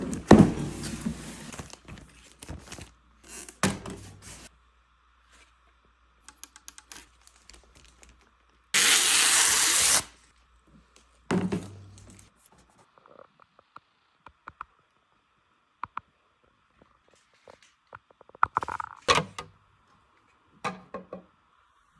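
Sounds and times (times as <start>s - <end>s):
handling thuds and knocks: 0.0s - 1.6s
loud ripping noise: 8.8s - 10.2s.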